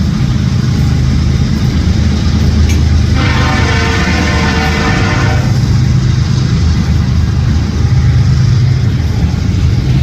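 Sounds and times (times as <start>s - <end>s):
loud steady low rumble: 0.0s - 10.0s
locomotive air horn chord: 3.1s - 5.7s.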